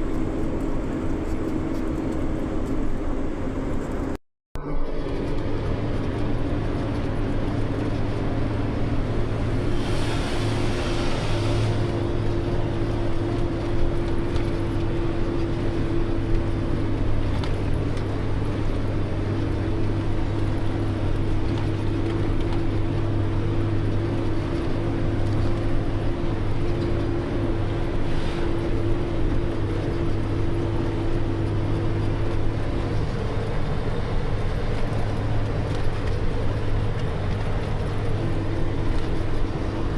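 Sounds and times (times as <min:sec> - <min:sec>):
diesel truck engine running: 0:00.0 - 0:39.9
hiss: 0:09.7 - 0:11.8.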